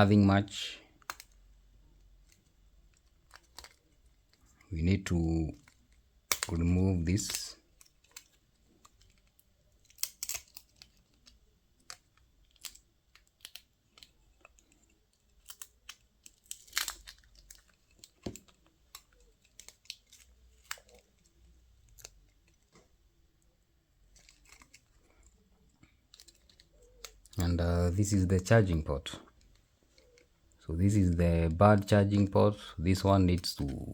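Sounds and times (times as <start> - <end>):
faint clicks of small tools: 0.8 - 4.7
sharp plastic snaps: 0.8 - 4.7, 5.5 - 23.0.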